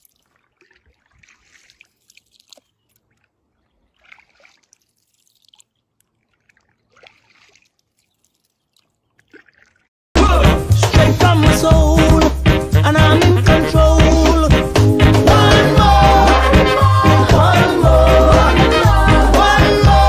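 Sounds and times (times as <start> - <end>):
faint water splashes and drips: 0.0 - 9.9.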